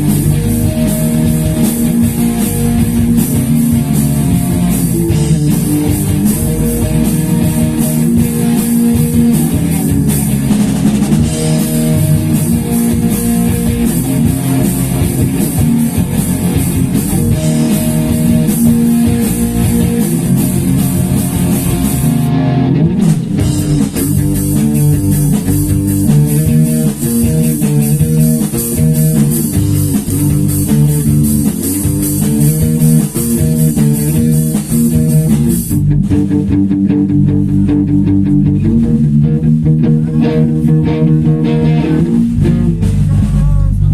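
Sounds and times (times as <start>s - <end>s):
rock band playing instrumental: 0.0s - 43.8s.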